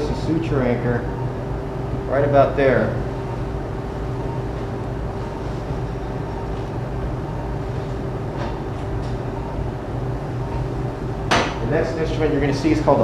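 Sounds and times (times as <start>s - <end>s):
low machine hum with held tone: 0.0s - 13.0s.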